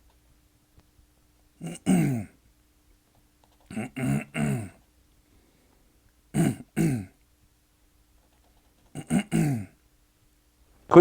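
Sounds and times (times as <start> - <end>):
person clearing throat: 1.6 - 2.4, 3.7 - 4.8, 6.3 - 7.2, 8.9 - 9.8.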